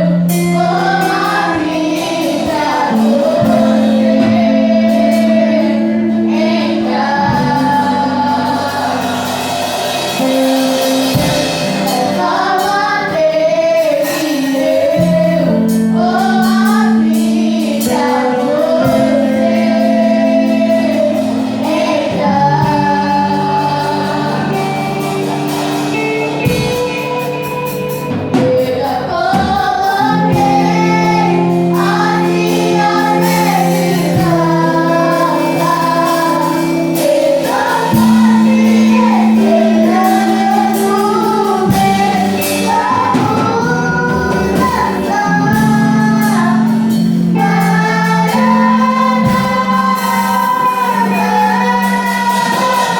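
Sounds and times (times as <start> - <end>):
women singing a worship song: 0.0 - 52.9.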